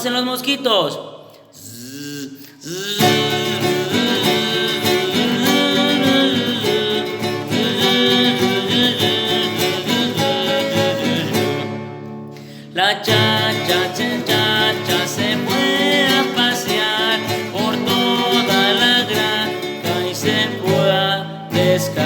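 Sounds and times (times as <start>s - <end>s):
voice imitating mosquito buzz: 1.6s - 3.2s
guitar accompaniment: 2.8s - 22.0s.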